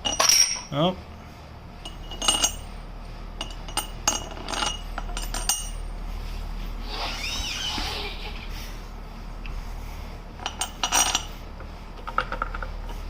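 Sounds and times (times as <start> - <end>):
metal studs clinking: 0.0 - 0.8
short squeak: 6.8 - 8.5.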